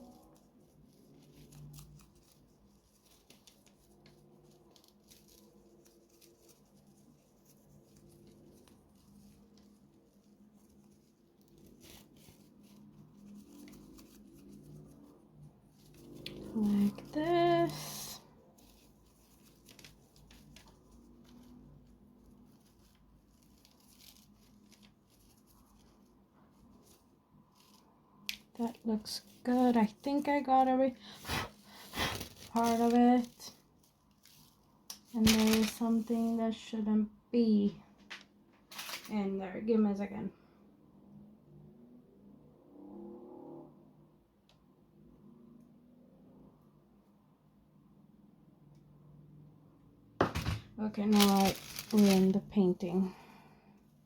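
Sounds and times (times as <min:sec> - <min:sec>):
scratchy handling noises: 0:00.0 - 0:36.6, 0:38.0 - 0:39.2, 0:50.2 - 0:53.0
low steady hum: 0:00.0 - 0:38.0.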